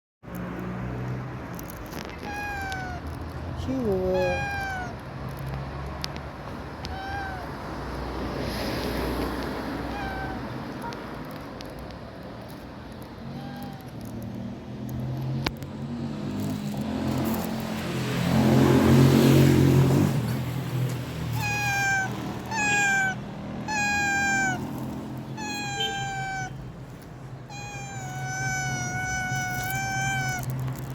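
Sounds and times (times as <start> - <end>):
cat meowing: 1.9 - 5.5, 6.4 - 7.8, 8.4 - 14.4, 21.2 - 30.9.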